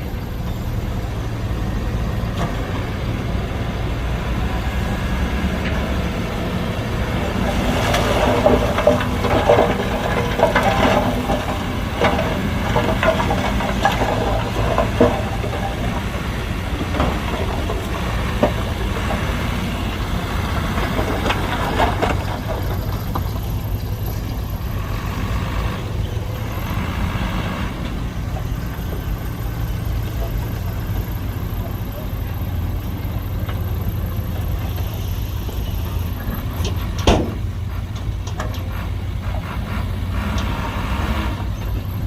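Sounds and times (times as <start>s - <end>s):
diesel construction machine engine: 0.0s - 42.0s
metal clanks and knocks: 7.0s - 24.5s, 33.4s - 38.9s.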